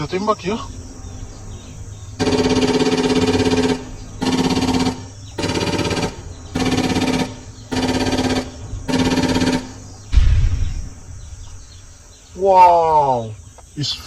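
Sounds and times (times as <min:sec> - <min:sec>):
steady electronic tone: 0:00.0 - 0:12.3
toy machine-gun sound effect: 0:02.2 - 0:09.8
low thud: 0:09.7 - 0:12.2.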